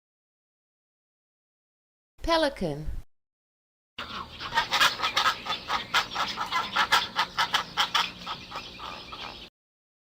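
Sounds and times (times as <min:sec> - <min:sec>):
pelicans calling: 0:04.0 - 0:09.5.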